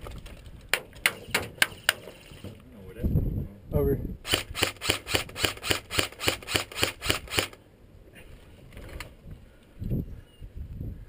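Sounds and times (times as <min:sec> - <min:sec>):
airsoft gun rapid shots: 0:04.3 - 0:07.6.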